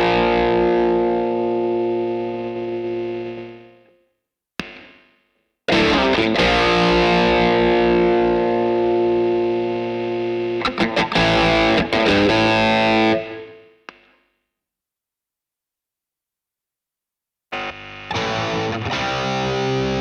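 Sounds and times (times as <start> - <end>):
overdriven electric guitar chords: 0.0 - 4.0, 5.7 - 14.0, 17.5 - 20.0
guitar pick click: 4.6 - 5.0, 13.8 - 14.2.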